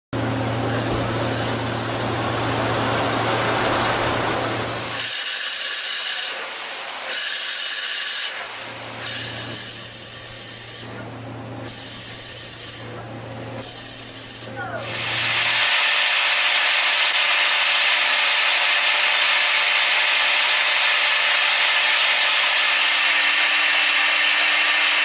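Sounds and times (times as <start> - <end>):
machine hum with grinding: 0.2 - 25.0
high-pitched cutting whine: 13.6 - 25.0.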